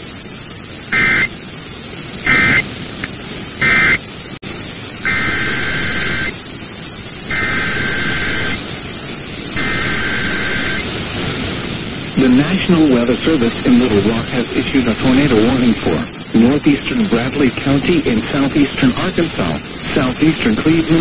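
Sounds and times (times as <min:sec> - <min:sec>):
radio static: 0:00.8 - 0:01.4, 0:02.2 - 0:06.6, 0:07.2 - 0:21.0
warbling digital data bursts: 0:00.9 - 0:01.4, 0:02.2 - 0:02.7, 0:03.6 - 0:04.0, 0:04.9 - 0:06.4, 0:07.2 - 0:08.8, 0:09.4 - 0:11.0.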